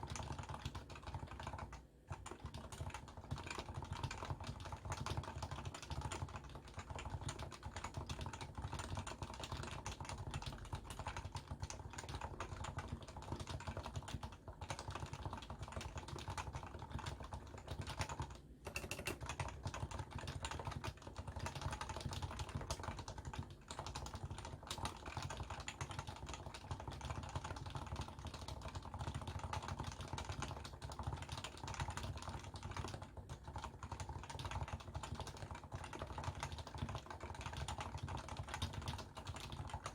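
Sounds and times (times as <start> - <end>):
fast keyboard typing: 0.0 - 39.9.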